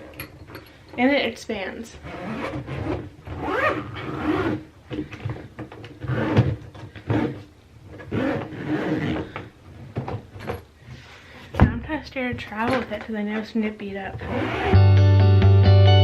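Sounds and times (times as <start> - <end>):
zipper: 2.0 - 9.5, 14.2 - 14.8
suitcase scraping and rasping: 2.0 - 10.6, 14.2 - 14.8.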